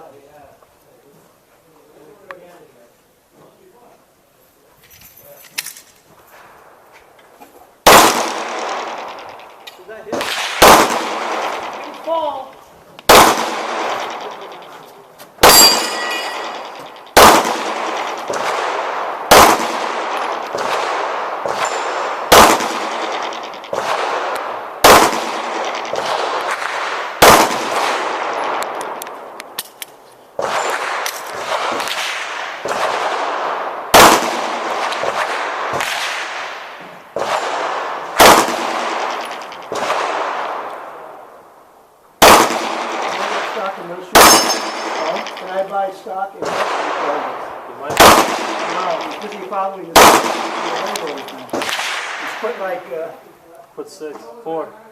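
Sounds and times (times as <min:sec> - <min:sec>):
pistol shots with echo: 0:07.8 - 0:12.5, 0:13.1 - 0:29.8, 0:30.4 - 0:41.3, 0:42.2 - 0:53.1
steel target ringing: 0:14.1 - 0:17.2, 0:44.2 - 0:45.4.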